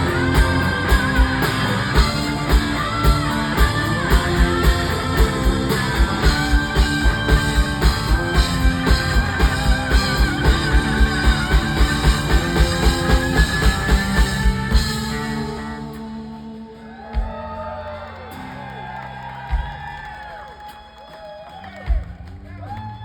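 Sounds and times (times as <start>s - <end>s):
electric guitar lead note: 0.0s - 16.8s.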